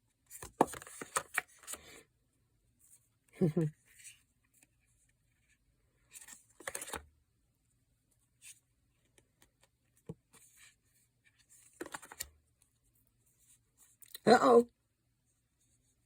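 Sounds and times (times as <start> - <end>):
cards sliding and rustling: 0.4 - 1.9, 6.1 - 7.0, 11.4 - 12.3.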